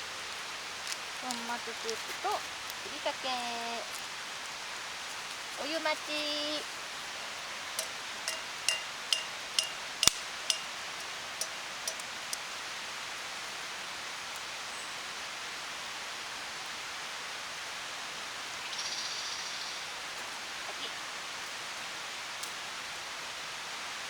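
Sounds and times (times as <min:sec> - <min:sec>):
steady hiss: 0:00.0 - 0:24.0
light clinks: 0:07.1 - 0:12.5.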